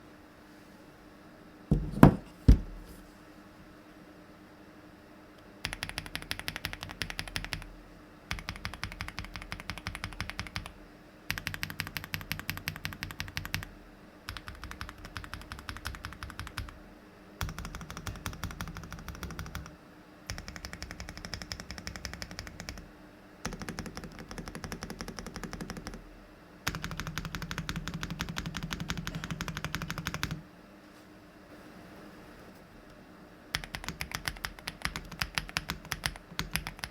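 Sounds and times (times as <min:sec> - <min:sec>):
sharp knock: 0:01.7 - 0:02.7
fast typing on mechanical keyboard: 0:05.6 - 0:07.7, 0:08.3 - 0:13.7, 0:14.3 - 0:16.8, 0:17.4 - 0:22.8, 0:23.4 - 0:26.0, 0:26.7 - 0:30.4, 0:33.5 - 0:36.9.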